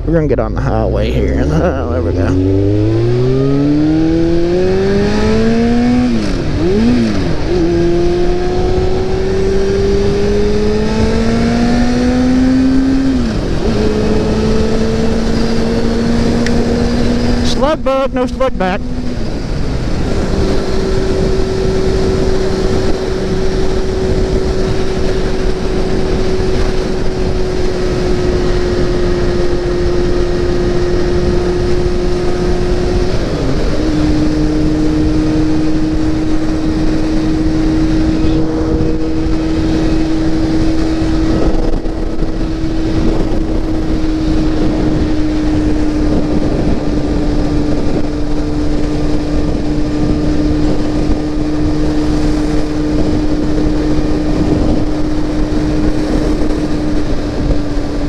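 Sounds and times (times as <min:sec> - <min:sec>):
wind rush on microphone: 0:01.2 - 0:58.0
motorcycle engine running: 0:18.6 - 0:58.0.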